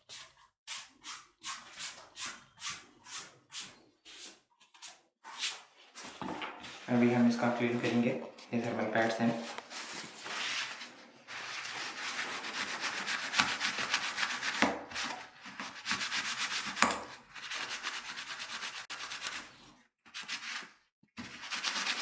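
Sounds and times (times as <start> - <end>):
scrubbing strokes: 9.2 - 16.7.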